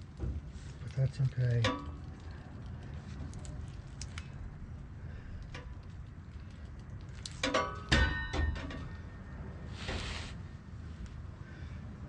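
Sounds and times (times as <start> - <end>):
metal exhaust pipe clanking: 7.4 - 9.1.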